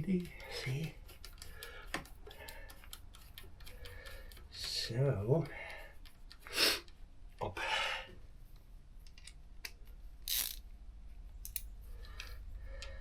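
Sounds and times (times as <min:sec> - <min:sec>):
ratchet wrench clicking: 0:10.2 - 0:10.6, 0:11.4 - 0:11.7
parts scraping: 0:10.2 - 0:10.7.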